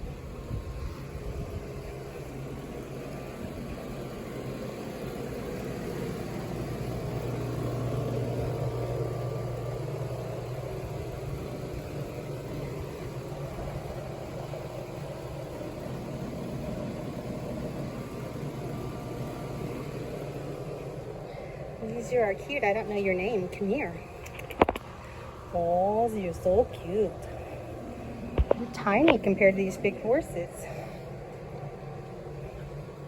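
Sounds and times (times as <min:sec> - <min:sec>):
low mechanical hum: 0:00.0 - 0:33.0.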